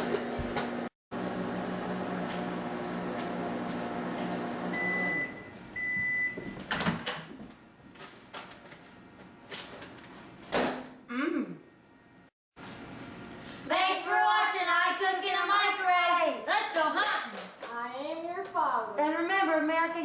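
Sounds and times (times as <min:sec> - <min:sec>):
microwave oven humming: 0:00.0 - 0:06.7.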